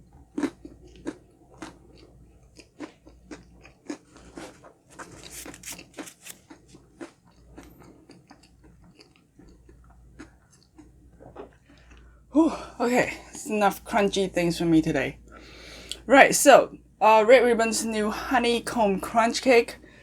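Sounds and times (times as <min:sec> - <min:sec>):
close chewing crunches: 0:00.1 - 0:12.1.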